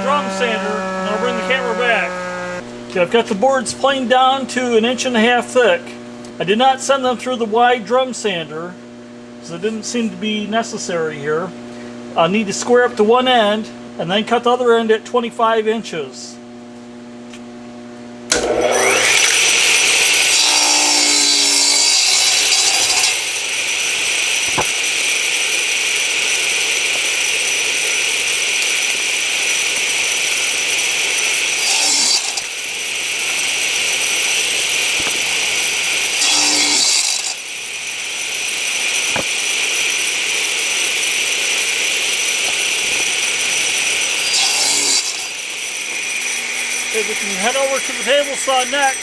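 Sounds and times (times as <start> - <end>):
power saw cutting wood: 0.0 - 3.0, 18.3 - 49.0.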